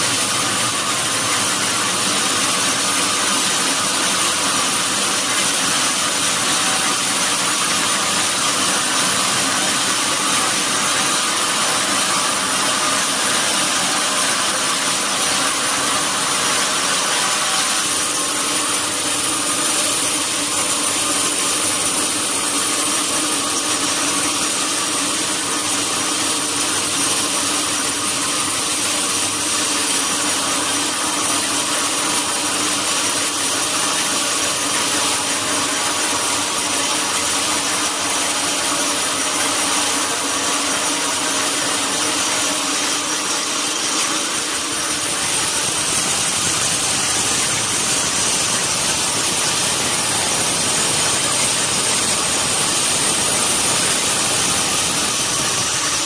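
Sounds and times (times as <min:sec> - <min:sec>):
sawmill saw whining: 0:00.0 - 0:56.0.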